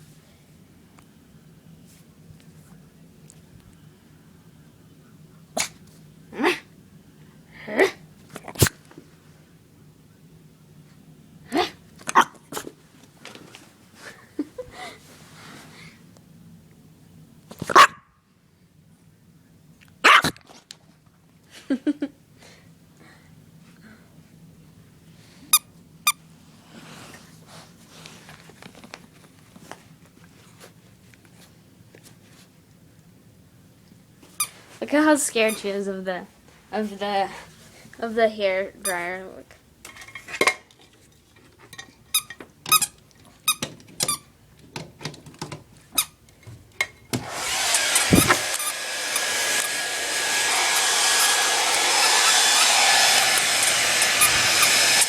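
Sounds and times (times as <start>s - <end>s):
puppy yapping: 20.0s - 20.4s
hair dryer running: 47.2s - 55.0s.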